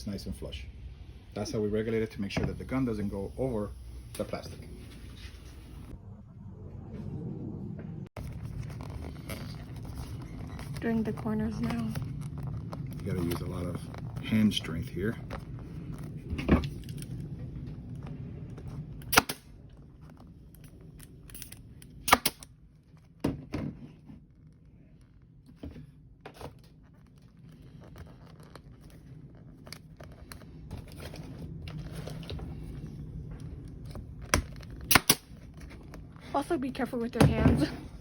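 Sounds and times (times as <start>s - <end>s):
steady low hum: 0.0s - 38.0s
vinyl material rustling: 8.2s - 21.0s, 23.8s - 38.0s.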